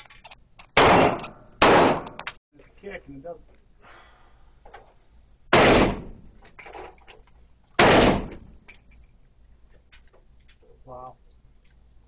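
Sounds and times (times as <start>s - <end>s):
gunshots: 0.8s - 2.2s, 5.5s - 6.3s, 7.8s - 8.6s.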